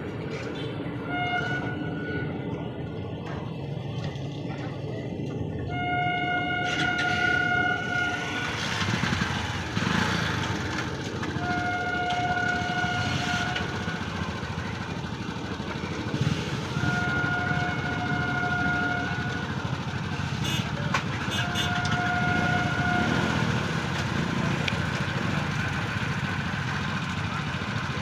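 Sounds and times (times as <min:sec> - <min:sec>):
low rumble of train: 0:00.0 - 0:28.0
train horn blasts: 0:01.0 - 0:02.4, 0:05.6 - 0:09.0, 0:11.2 - 0:14.2, 0:16.6 - 0:23.6.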